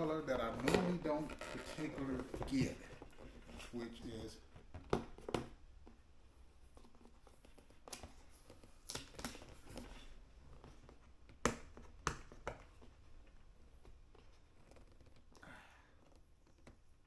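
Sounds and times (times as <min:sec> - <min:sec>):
cardboard packaging clicks and taps: 0:04.6 - 0:06.0, 0:06.7 - 0:15.3.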